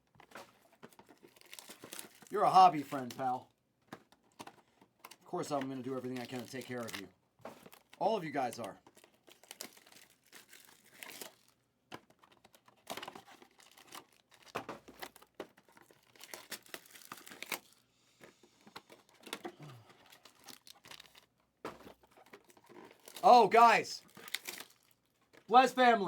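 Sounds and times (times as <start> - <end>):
packaging crinkling and tearing: 0.1 - 17.8, 18.6 - 25.6.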